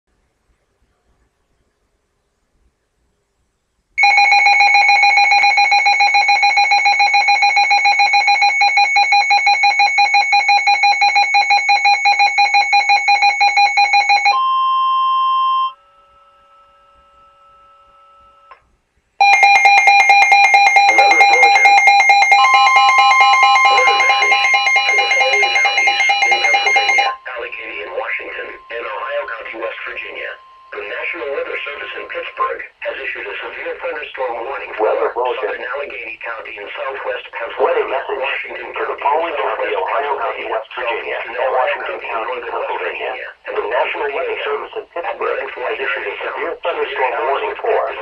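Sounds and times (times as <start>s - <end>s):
steady alert tone: 19.2s - 31.0s.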